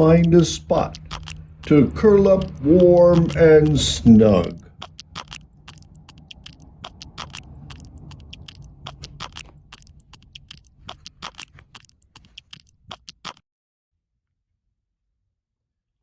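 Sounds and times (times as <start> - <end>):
low hum: 0.0 - 11.8
paper clicking and scraping: 8.4 - 13.4.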